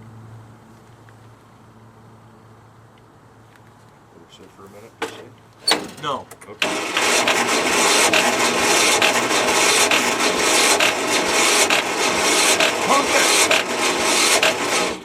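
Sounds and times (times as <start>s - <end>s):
electric starter cranking engine: 5.7s - 15.0s.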